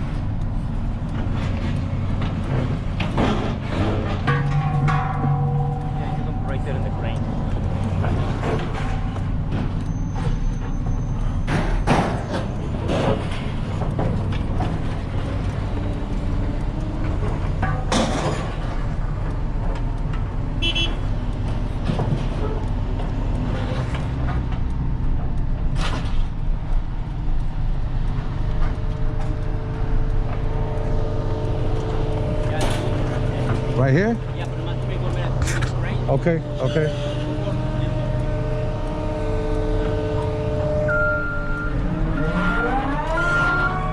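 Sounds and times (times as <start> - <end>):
truck engine idling: 0.0 - 41.8
sharp metallic knocks: 1.6 - 10.8, 17.1 - 19.4.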